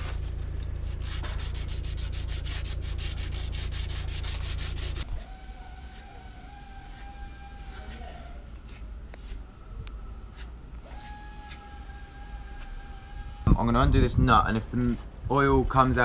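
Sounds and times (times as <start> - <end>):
power tool humming and pulsing: 3.4 - 8.3, 10.8 - 13.6
machine with thin whine: 5.0 - 8.6.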